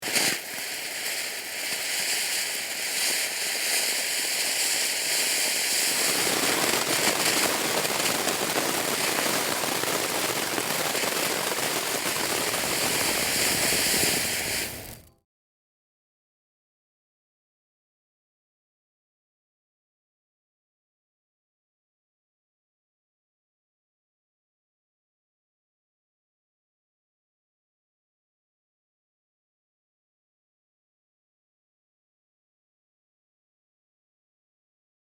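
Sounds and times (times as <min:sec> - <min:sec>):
firework fountain crackling hiss: 0:00.0 - 0:15.1.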